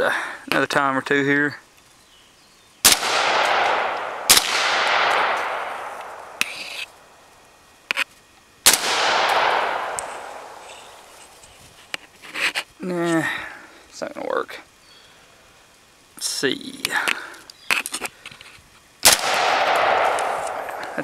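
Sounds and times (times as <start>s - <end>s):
rifle shots with echo: 2.8s - 7.0s, 8.6s - 11.1s, 19.0s - 21.0s.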